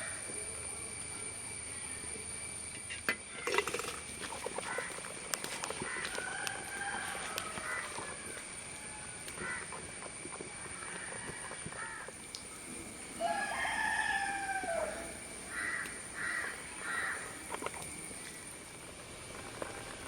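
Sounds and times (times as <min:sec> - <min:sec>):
fowl calling: 0:04.2 - 0:09.9, 0:10.8 - 0:17.5.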